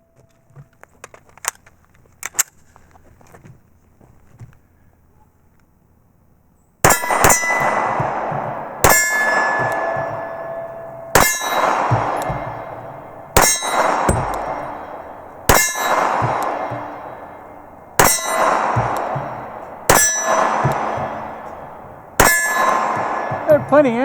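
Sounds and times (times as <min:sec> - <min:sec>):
metallic ringing: 0:06.8 - 0:24.0
pistol shots: 0:06.8 - 0:24.0.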